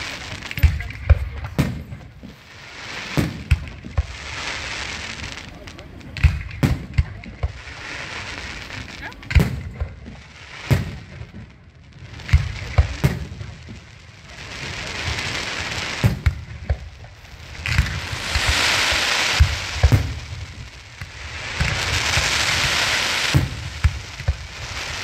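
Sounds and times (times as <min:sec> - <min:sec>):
firecrackers crackling hiss: 0:00.0 - 0:25.0
fireworks bangs: 0:00.0 - 0:25.0.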